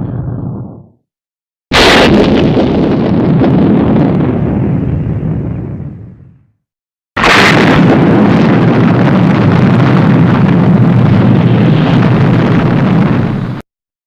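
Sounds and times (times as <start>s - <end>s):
low rumble: 0.0s - 0.9s
explosion blast: 0.0s - 1.0s, 1.7s - 6.5s, 7.2s - 13.6s.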